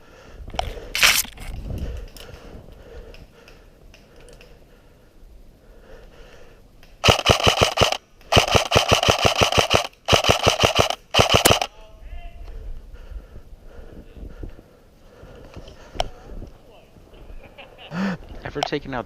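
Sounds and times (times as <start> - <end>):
rustling and scraping movement: 0.5 - 2.8
airsoft gun firing full auto: 7.0 - 11.7.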